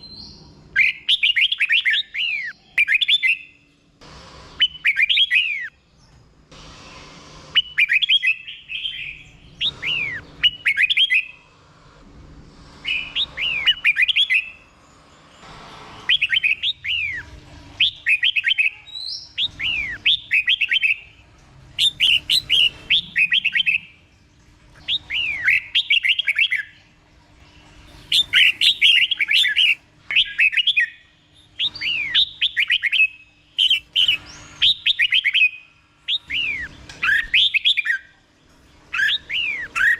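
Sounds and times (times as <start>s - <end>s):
bird singing whistled phrases: 0.0s - 3.6s, 17.8s - 21.1s, 21.8s - 23.9s, 28.1s - 31.0s, 31.6s - 38.1s, 38.9s - 39.9s.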